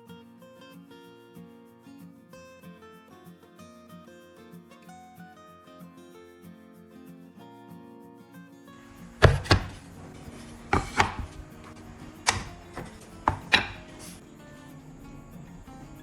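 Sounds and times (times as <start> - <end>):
background music: 8.8 - 16.0
sharp double knocks: 9.1 - 14.2.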